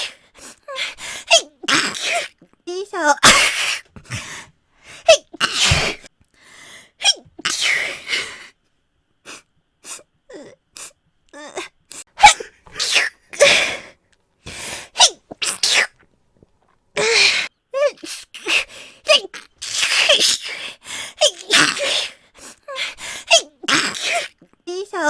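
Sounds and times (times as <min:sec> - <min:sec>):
woman sneezing: 0:03.2 - 0:03.8, 0:05.1 - 0:06.1, 0:12.2 - 0:13.8, 0:15.0 - 0:15.9, 0:21.2 - 0:24.4.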